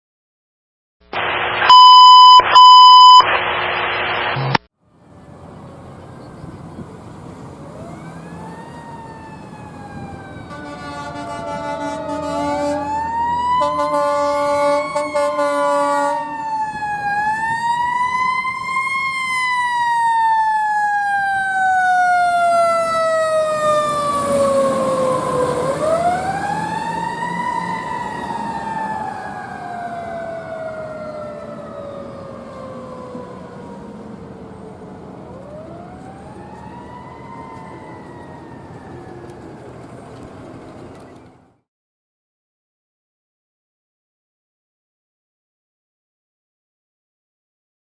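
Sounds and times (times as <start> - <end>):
fire engine siren wailing: 6.9 - 40.7
air horn blasts: 10.5 - 13.0, 13.6 - 16.3.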